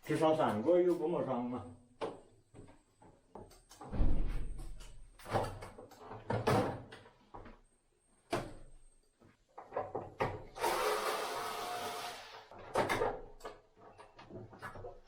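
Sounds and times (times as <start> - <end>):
knocks and clatter of parts: 2.0 - 7.6, 8.2 - 10.6, 12.5 - 15.0.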